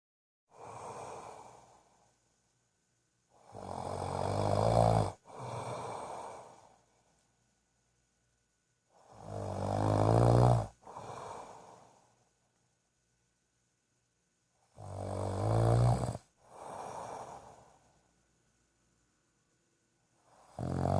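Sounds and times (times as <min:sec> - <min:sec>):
loud rattling snores: 0:00.5 - 0:01.8, 0:03.4 - 0:06.6, 0:09.0 - 0:11.8, 0:14.7 - 0:17.7, 0:20.2 - 0:20.9
soft breath: 0:00.5 - 0:02.5, 0:05.2 - 0:07.5, 0:10.7 - 0:12.6, 0:16.2 - 0:18.3.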